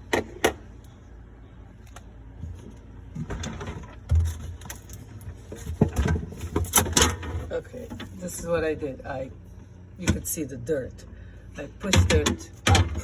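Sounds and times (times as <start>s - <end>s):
glass shelf clicks and knocks: 11.9s - 13.0s.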